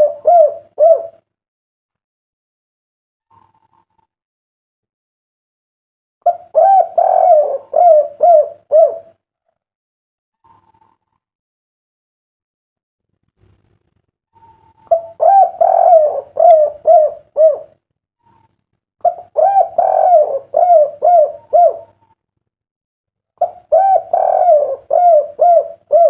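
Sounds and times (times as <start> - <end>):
dove cooing: 0.0 - 1.2, 6.2 - 9.2, 14.4 - 22.2, 23.4 - 26.0.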